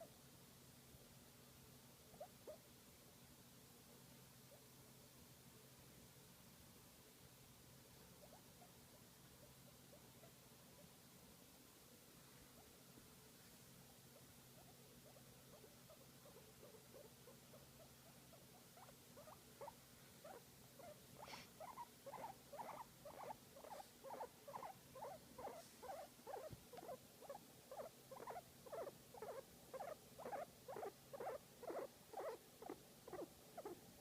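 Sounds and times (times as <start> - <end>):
guinea pig squeaking: 2.1 - 2.7, 8.2 - 10.9, 14.1 - 33.8.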